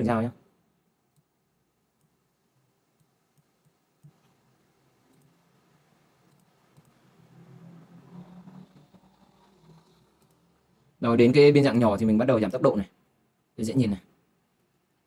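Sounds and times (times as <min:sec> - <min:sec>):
faint low hum: 0:00.0 - 0:15.0
computer mouse clicks: 0:01.1 - 0:01.3, 0:02.0 - 0:02.2, 0:02.9 - 0:04.4, 0:05.1 - 0:05.4, 0:06.2 - 0:07.0, 0:08.5 - 0:10.6.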